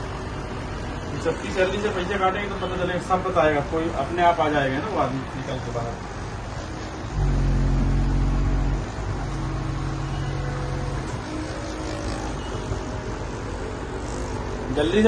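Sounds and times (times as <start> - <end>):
low motor hum: 6.6 - 14.7.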